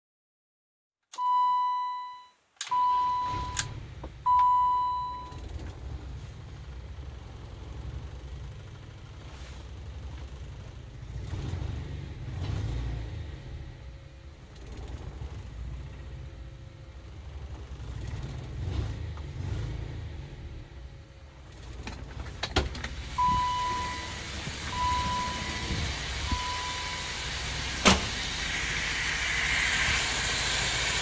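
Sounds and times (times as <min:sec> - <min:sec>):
loud steady beeps: 0:04.3 - 0:05.4, 0:23.2 - 0:27.2
car engine rough idle: 0:05.2 - 0:12.4, 0:13.6 - 0:19.5, 0:20.4 - 0:31.0.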